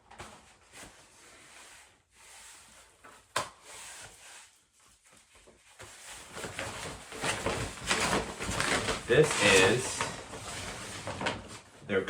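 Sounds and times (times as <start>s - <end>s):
packaging rustling and crinkling: 4.9s - 11.9s.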